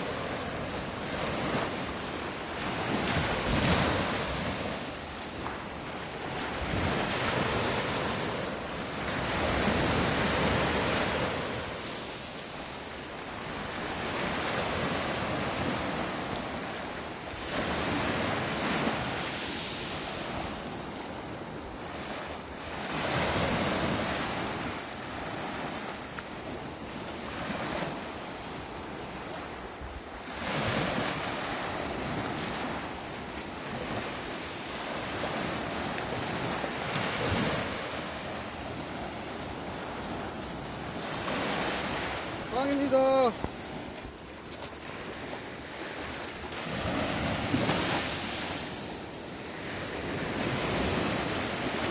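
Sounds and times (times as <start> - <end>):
sea waves washing in: 0.0 - 51.9.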